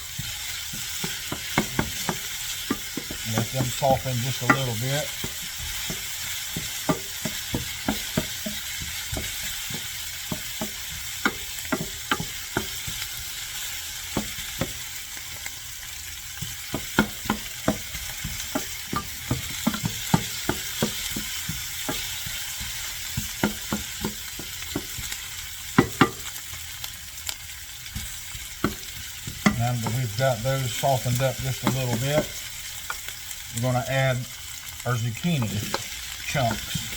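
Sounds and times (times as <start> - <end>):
utensil scraping a pan: 0.0 - 13.1
vegetables sizzling in a pan: 0.0 - 36.9.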